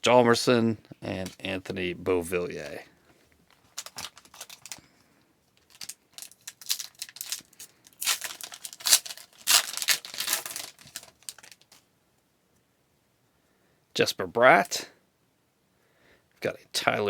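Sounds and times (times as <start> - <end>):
foil wrapper crinkling and tearing: 3.6 - 4.8, 5.6 - 11.8.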